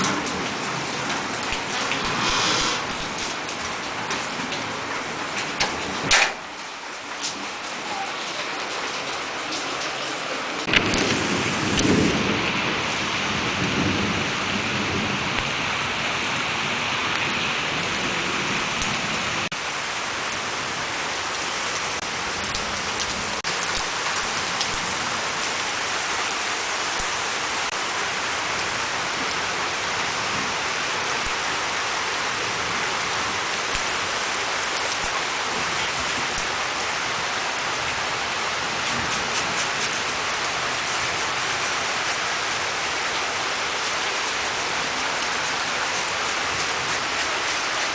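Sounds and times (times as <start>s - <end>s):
thunder rumble: 0.0s - 4.8s, 10.6s - 19.5s
heavy rain falling: 0.0s - 47.9s.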